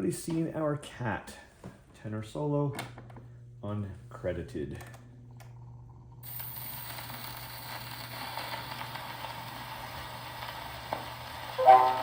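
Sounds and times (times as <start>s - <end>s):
record hiss and crackle: 6.2s - 12.0s
band music: 11.6s - 12.0s.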